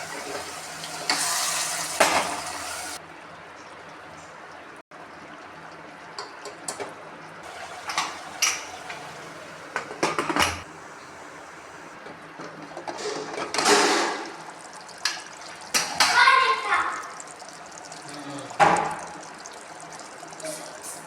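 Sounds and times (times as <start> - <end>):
water being poured: 13.0 - 21.0.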